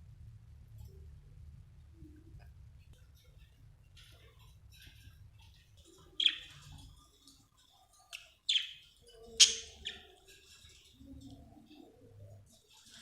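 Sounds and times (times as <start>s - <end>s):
budgerigar chirping: 6.2s - 6.5s, 8.2s - 10.1s
soft bird warbling: 8.2s - 10.4s.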